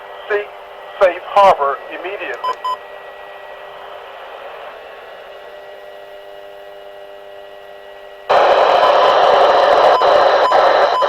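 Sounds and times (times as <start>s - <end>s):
loud rush of static: 0.0s - 5.8s, 8.3s - 11.0s
radio hiss: 0.0s - 6.6s, 8.3s - 11.0s
faint steady hum tones: 0.0s - 11.0s.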